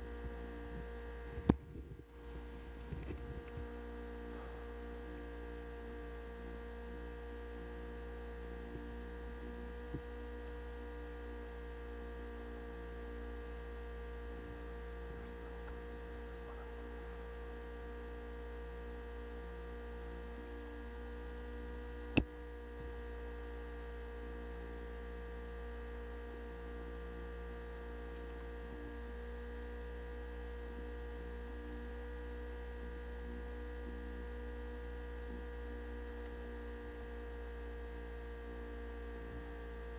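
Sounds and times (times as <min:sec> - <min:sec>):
steady electrical hum: 0:00.0 - 0:39.9
faint tick: 0:36.2 - 0:36.8.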